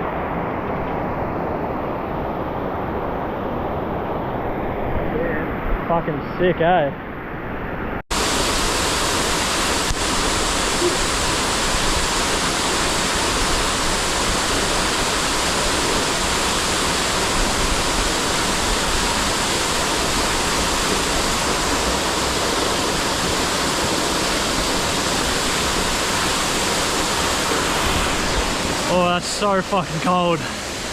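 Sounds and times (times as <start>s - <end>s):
waterfall roaring: 8.2s - 30.9s.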